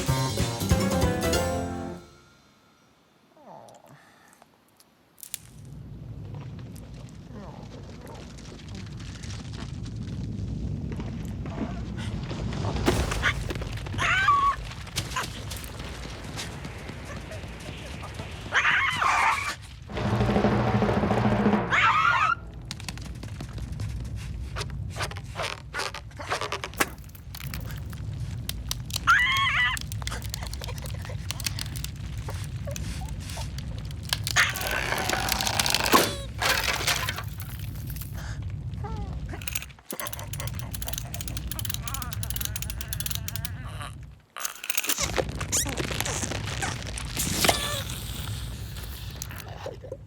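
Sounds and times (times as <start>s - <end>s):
low background rumble: 19.7s - 44.4s
scraping and scuffling noises: 22.8s - 38.2s
clicks: 26.6s - 38.2s, 39.4s - 43.6s, 44.4s - 45.1s.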